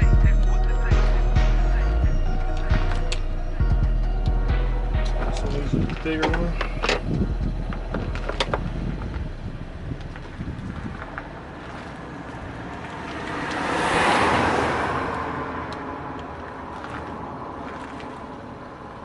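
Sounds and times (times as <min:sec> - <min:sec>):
vehicle passing by: 0:04.4 - 0:19.0.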